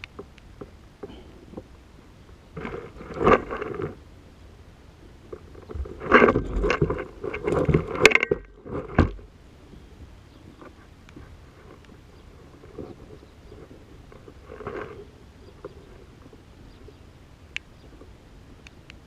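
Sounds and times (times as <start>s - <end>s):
knocks and scrapes in boat: 2.6s - 4.0s, 5.3s - 9.3s, 10.5s - 16.4s.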